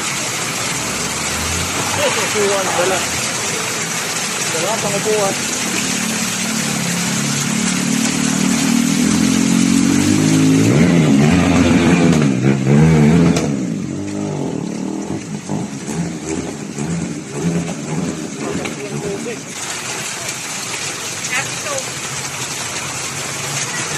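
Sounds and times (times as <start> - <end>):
vehicle engine revving: 0.0 - 4.0, 5.0 - 19.4
hiss of rain and water: 0.0 - 23.9.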